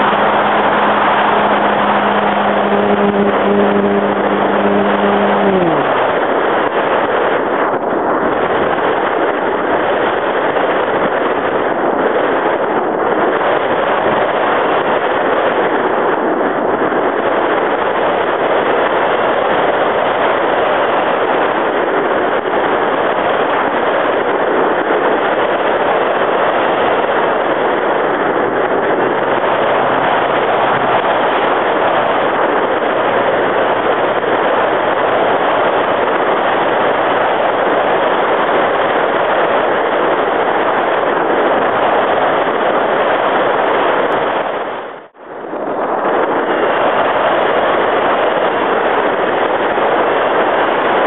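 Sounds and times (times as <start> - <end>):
model plane motor: 0.0 - 8.9
wind rushing: 0.0 - 51.0.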